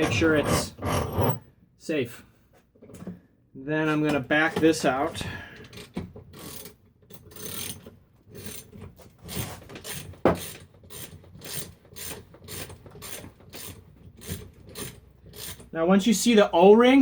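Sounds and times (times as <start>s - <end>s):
ratchet wrench ratcheting: 5.7s - 15.7s.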